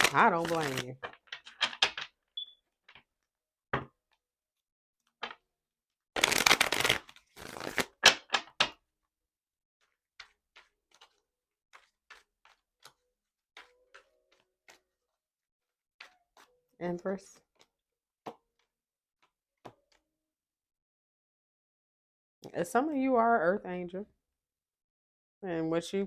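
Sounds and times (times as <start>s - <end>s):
cards shuffling: 0.0s - 2.1s, 6.2s - 8.5s.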